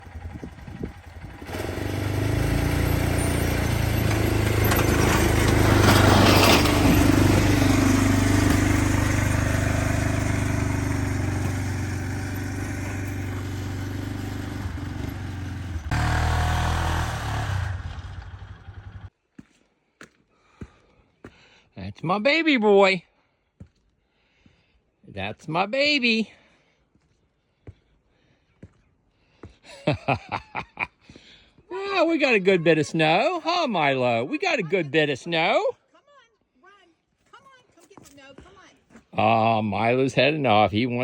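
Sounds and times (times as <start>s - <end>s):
engine running: 0.0s - 19.1s.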